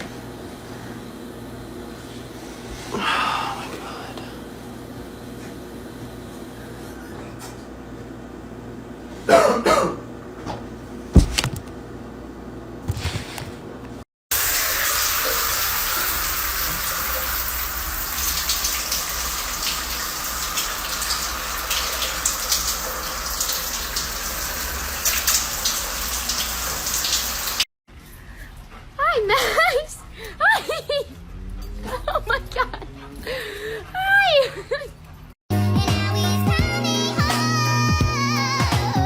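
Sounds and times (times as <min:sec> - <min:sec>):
running water: 0:14.3 - 0:27.7.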